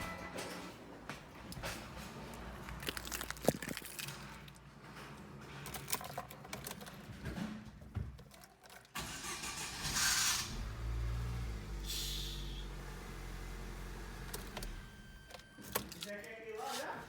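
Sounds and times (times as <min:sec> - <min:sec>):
starter motor cranking: 0:09.0 - 0:11.8
car engine idling: 0:09.0 - 0:15.2.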